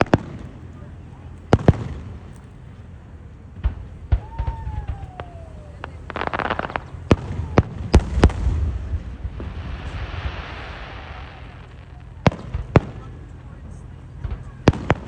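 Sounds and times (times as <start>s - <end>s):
fireworks sharp bangs: 0.0s - 2.7s, 3.4s - 15.0s
fireworks crackling: 0.0s - 15.0s
crackling hiss: 3.6s - 14.5s.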